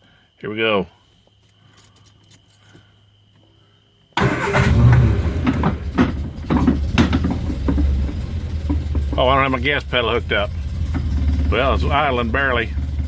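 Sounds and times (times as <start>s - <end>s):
car engine running unevenly: 4.2s - 13.0s.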